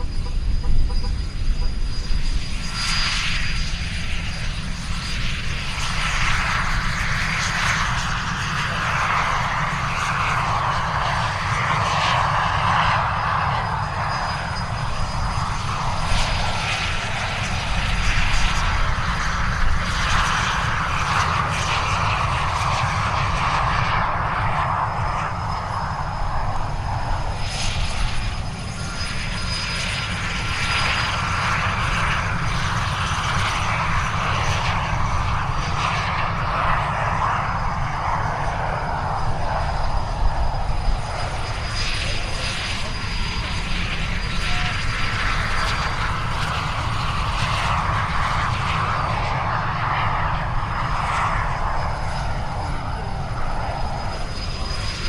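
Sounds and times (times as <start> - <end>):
jet rush and whine: 0.0 - 55.0.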